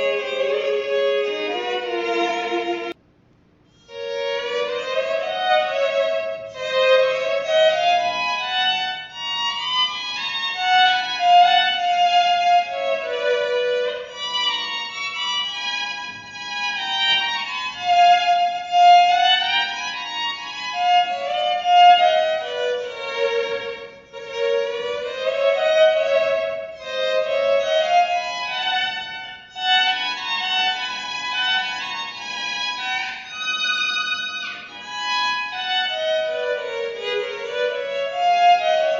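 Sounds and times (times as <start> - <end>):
electric violin bowed melody: 0.0 - 3.0, 3.7 - 38.9.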